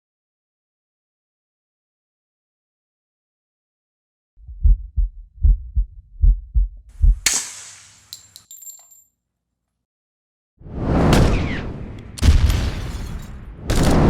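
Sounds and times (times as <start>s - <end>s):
heartbeat thumps: 4.4s - 7.3s.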